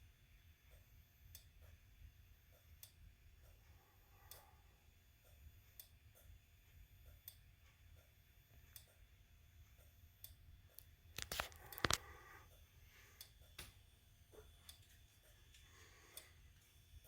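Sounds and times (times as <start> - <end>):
faint clicks: 10.2 - 12.1.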